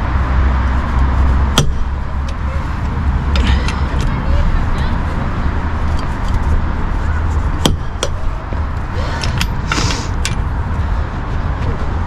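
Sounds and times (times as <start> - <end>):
steady low hum: 0.0 - 12.0
short hiss: 9.6 - 10.2.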